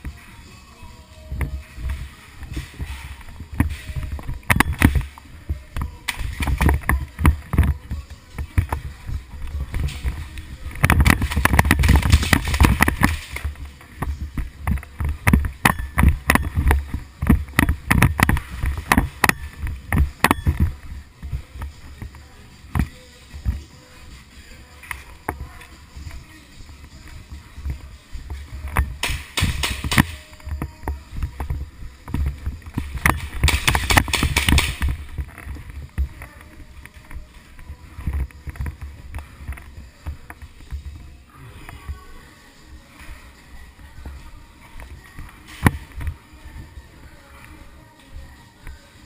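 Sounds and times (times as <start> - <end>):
sharp clicks and knocks: 9.7 - 20.7, 27.7 - 37.2.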